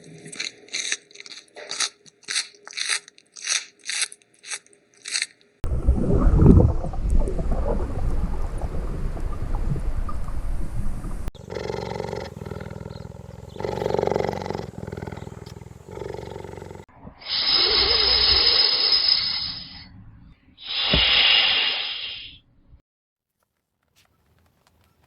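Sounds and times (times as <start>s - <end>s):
long harsh hissing calls: 13.6s - 19.8s, 20.6s - 22.4s.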